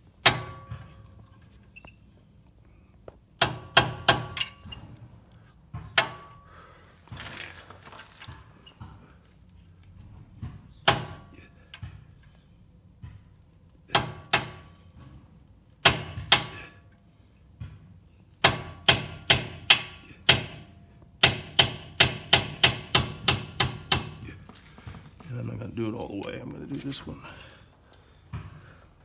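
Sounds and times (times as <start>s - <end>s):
hammer tapping steel punch: 0.2s - 1.4s, 3.4s - 4.9s, 5.7s - 6.7s, 10.5s - 12.4s, 13.9s - 15.1s, 15.8s - 17.0s, 18.4s - 25.3s.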